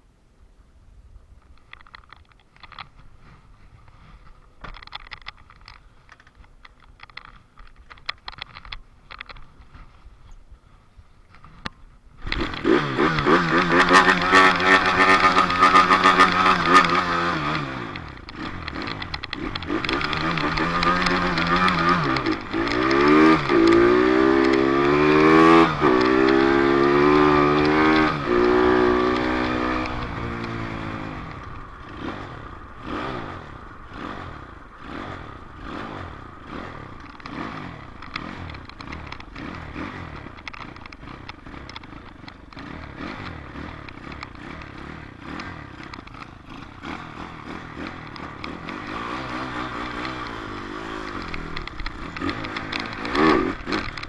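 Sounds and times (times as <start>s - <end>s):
uneven engine with rattling: 1.4s - 54.0s
dirt bike engine accelerating: 11.3s - 54.0s.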